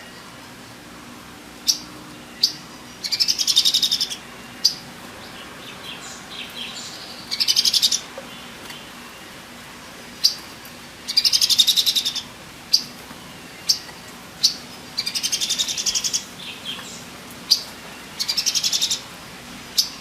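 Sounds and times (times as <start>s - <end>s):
bird chattering trills: 1.7s - 4.8s, 5.7s - 8.1s, 11.1s - 12.9s, 13.7s - 19.1s.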